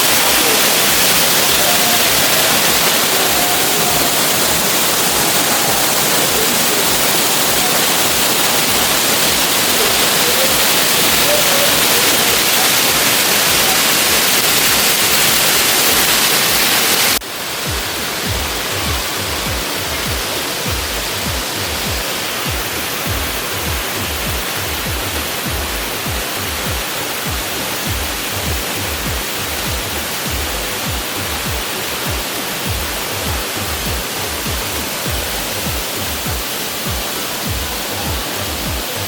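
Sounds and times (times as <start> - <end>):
waterfall rushing: 0.0 - 39.0
background music with low beat: 17.2 - 39.0.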